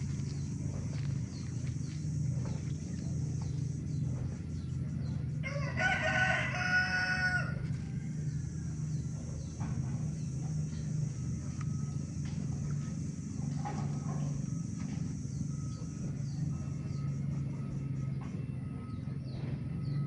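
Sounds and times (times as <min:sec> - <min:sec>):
low rumble: 0:00.0 - 0:05.5
rooster crowing: 0:05.4 - 0:09.0.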